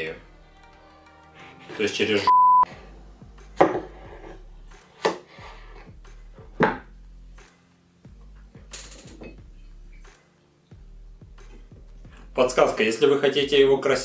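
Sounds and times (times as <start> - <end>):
faint background music: 0.0 - 14.0
knife knocking on cutting board: 3.6 - 3.9.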